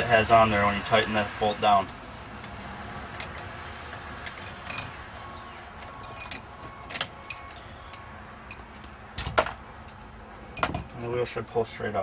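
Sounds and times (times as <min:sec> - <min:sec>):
low steady background noise: 0:00.0 - 0:12.0
metal tools clinking: 0:02.4 - 0:11.1.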